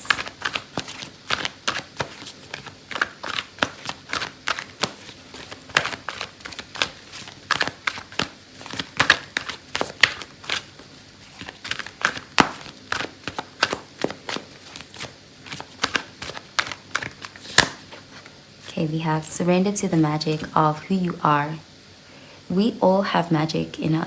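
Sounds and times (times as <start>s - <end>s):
cards being shuffled: 0.0s - 18.9s.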